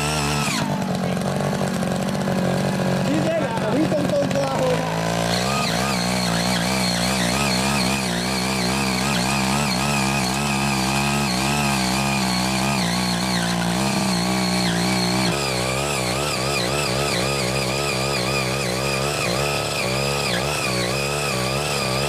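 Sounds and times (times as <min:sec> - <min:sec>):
motor plough engine running: 0:00.0 - 0:22.0.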